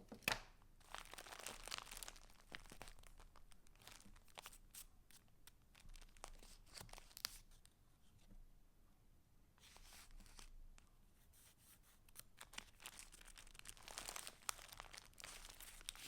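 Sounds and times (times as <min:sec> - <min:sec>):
paper rustling and crinkling: 0:00.8 - 0:07.7, 0:09.6 - 0:10.6, 0:11.4 - 0:16.0.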